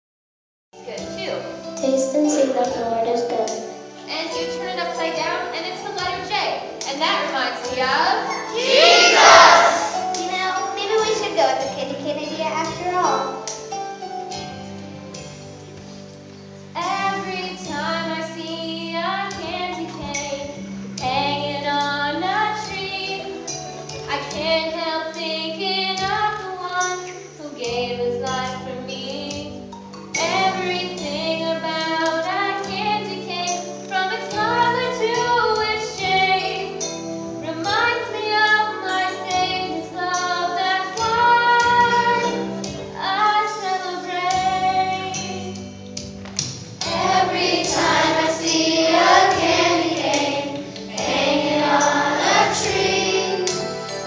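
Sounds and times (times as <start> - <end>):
instrumental backing music: 0.8 - 54.0
children singing: 8.2 - 10.2, 37.7 - 42.6, 46.8 - 54.0.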